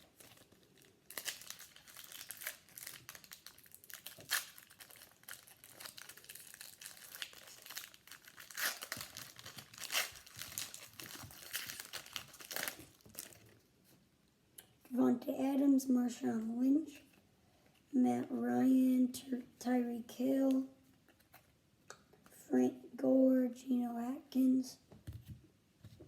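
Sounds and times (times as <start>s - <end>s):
foil wrapper crinkling and tearing: 0.0s - 13.6s.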